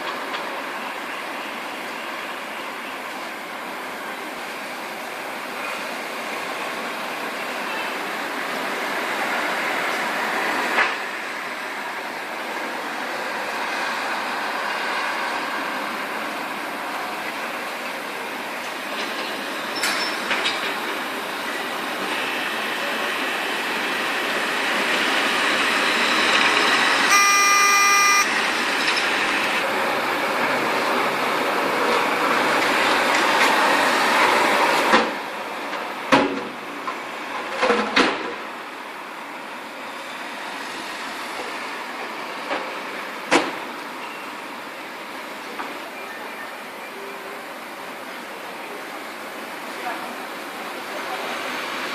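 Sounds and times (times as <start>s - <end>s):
road traffic passing: 0.0s - 45.8s, 46.6s - 51.9s
car horn: 27.1s - 28.4s.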